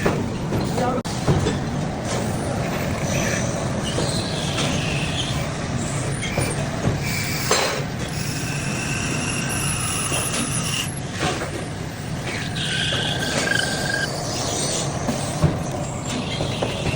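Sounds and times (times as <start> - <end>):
metal lathe running: 1.6 - 16.9
high-pitched whines: 2.1 - 16.9.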